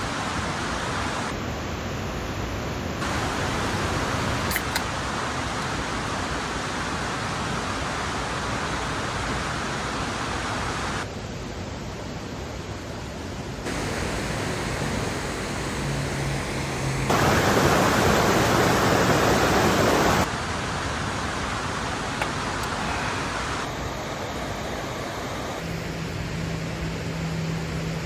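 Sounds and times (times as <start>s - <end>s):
rushing mountain stream: 2.7s - 11.1s, 13.4s - 25.7s.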